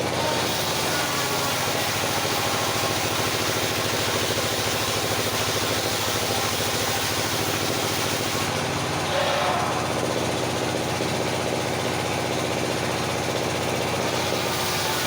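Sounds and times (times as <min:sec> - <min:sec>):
sawmill engine running: 0:00.0 - 0:15.0.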